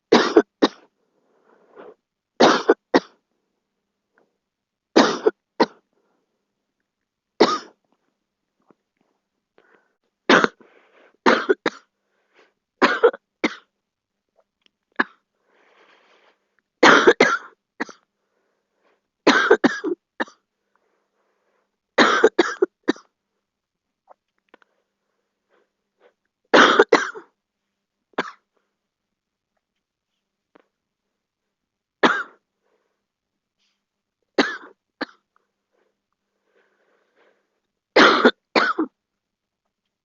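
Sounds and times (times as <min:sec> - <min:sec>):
girl coughing: 0:00.1 - 0:00.8, 0:05.0 - 0:05.8, 0:07.4 - 0:07.8, 0:11.3 - 0:11.9, 0:12.8 - 0:13.7, 0:16.8 - 0:18.0, 0:19.3 - 0:20.4, 0:22.0 - 0:23.1, 0:26.6 - 0:27.3, 0:32.0 - 0:32.4, 0:34.4 - 0:35.2, 0:38.0 - 0:38.9.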